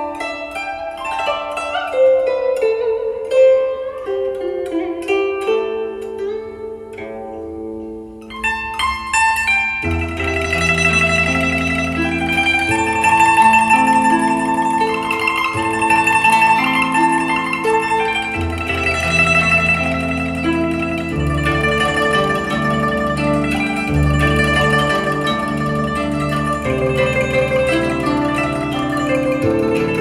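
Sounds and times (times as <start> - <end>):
plucked string instrument: 0.0 - 30.0.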